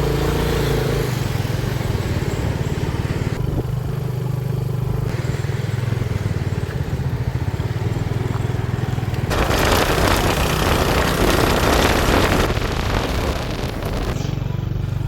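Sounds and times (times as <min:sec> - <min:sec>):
motorbike engine running: 0:00.0 - 0:15.0
rushing noise: 0:09.3 - 0:14.3.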